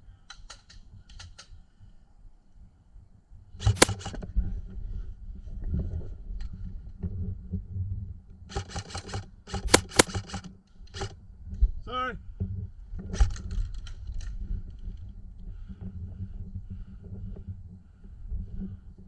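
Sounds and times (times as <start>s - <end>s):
airsoft gun shots: 3.6s - 4.2s, 8.5s - 11.1s.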